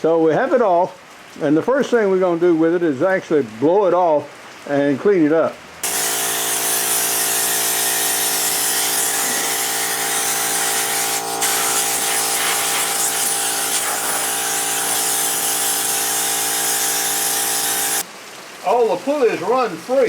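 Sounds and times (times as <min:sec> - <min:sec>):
air blower running: 0:05.8 - 0:18.0.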